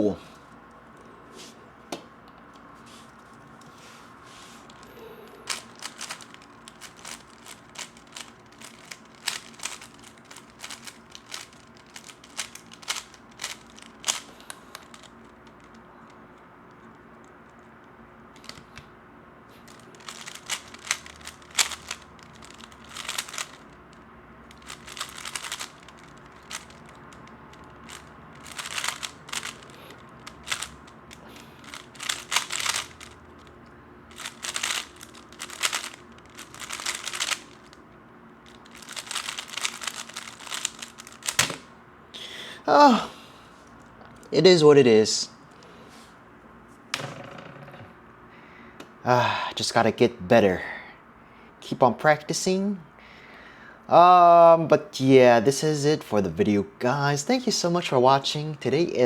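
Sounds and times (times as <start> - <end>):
puzzle cube clicking turns: 5.5 - 15.8, 19.7 - 23.8, 24.5 - 33.5, 34.1 - 37.8, 38.5 - 41.7.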